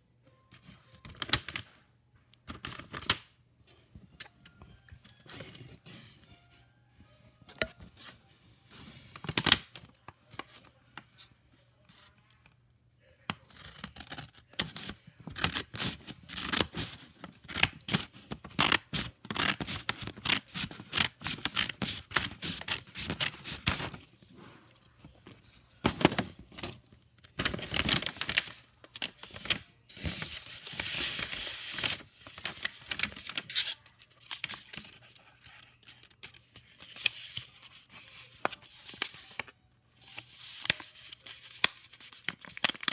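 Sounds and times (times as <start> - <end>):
paper packaging tearing: 13.5 - 24.0, 27.4 - 35.0, 40.0 - 42.9.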